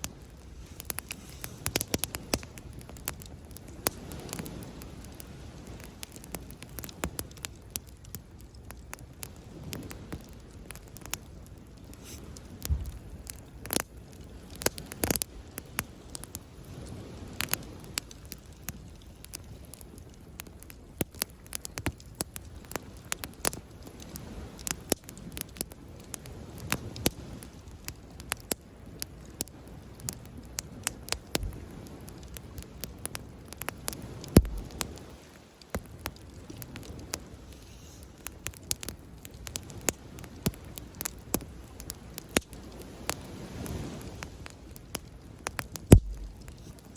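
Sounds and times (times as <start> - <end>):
campfire crackling and popping: 0.0 - 46.9
sea waves: 33.8 - 38.3, 39.4 - 46.9.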